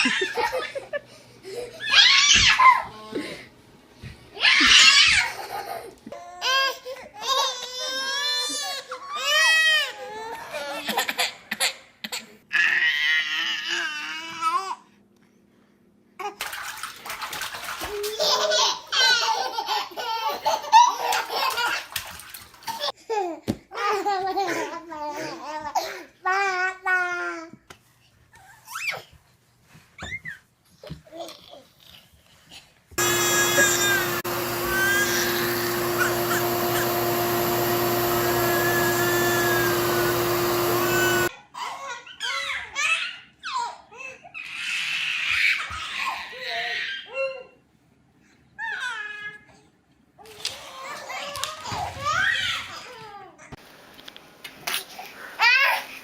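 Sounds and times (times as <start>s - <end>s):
baby squealing: 4.4s - 5.4s
bath water splashing: 16.4s - 18.5s, 21.0s - 22.9s
baby laughing and babbling: 17.8s - 27.6s
appliance motor whirring: 33.0s - 41.3s.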